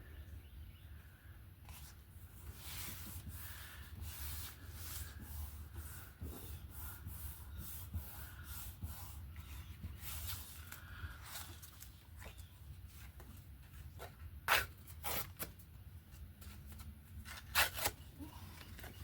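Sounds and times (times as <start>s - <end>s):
rubbing strokes on paper: 1.7s - 11.8s.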